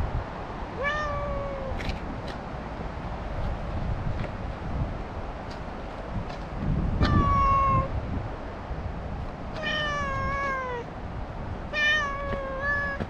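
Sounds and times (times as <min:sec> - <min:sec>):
cat meowing: 0:00.8 - 0:01.8, 0:07.0 - 0:07.9, 0:09.6 - 0:10.9, 0:11.7 - 0:13.0.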